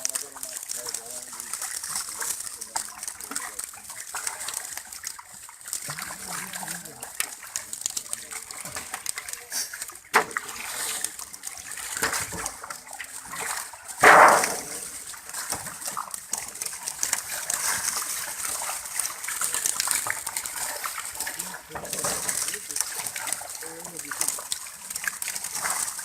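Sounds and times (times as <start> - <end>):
water splashing and sloshing: 0.0 - 26.0.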